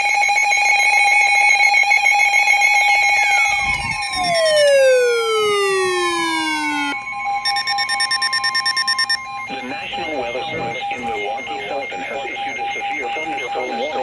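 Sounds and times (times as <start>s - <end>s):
buzzy multi-tone alarm: 0.0s - 14.0s
tone gliding down in pitch: 3.0s - 9.2s.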